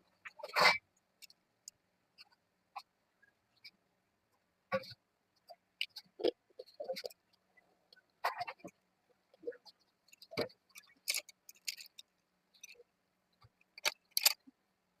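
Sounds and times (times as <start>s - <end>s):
slate pencils clicking: 10.1s - 12.8s, 13.8s - 14.4s.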